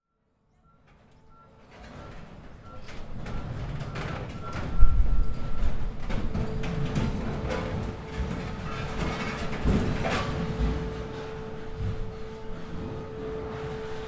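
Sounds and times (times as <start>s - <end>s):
heavy machinery rumble: 0.9s - 14.0s
metal clanks: 6.0s - 12.9s.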